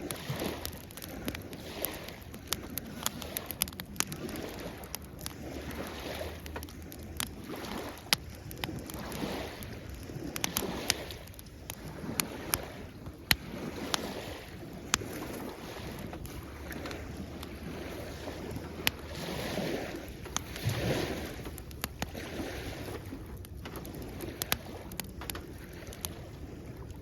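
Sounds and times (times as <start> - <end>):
campfire crackling and popping: 0.0 - 27.0
small waves washing on shore: 0.0 - 27.0.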